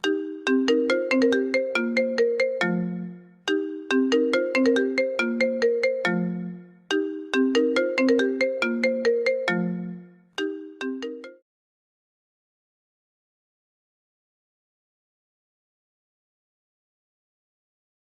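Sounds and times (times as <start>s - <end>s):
marimba-like phone ringtone: 0.0s - 11.4s.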